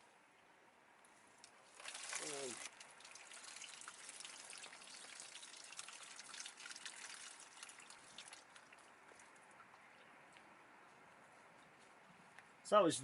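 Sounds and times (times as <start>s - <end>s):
water trickling into plastic tub: 1.4s - 10.3s.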